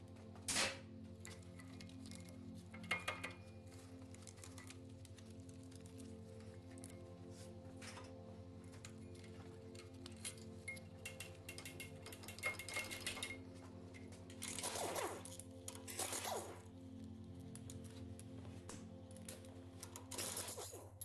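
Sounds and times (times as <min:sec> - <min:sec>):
background music: 0:00.0 - 0:21.0
tools and engine parts clinking: 0:01.1 - 0:05.0, 0:07.8 - 0:16.7.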